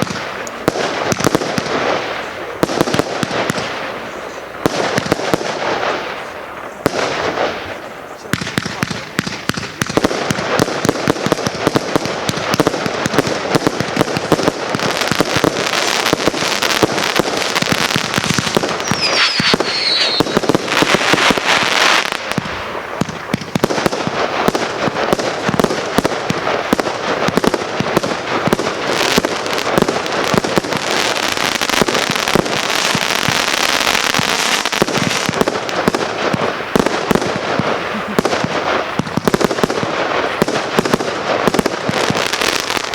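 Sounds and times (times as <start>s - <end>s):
firework barrage crackling: 0.0s - 42.9s
falling firework whistle: 18.3s - 22.5s.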